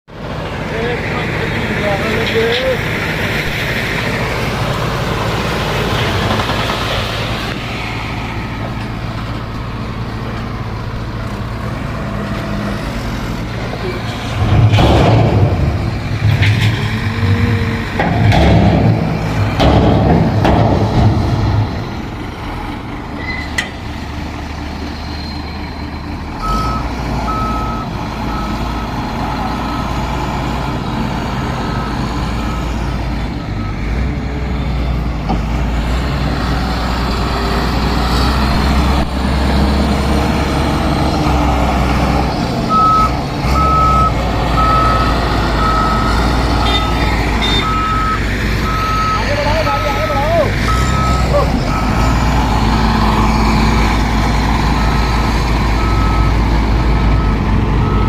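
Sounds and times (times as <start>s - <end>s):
diesel construction machinery running: 0.1s - 58.0s
reversing alarm beeping: 26.4s - 28.9s, 42.7s - 52.3s, 55.8s - 56.4s, 57.1s - 58.0s.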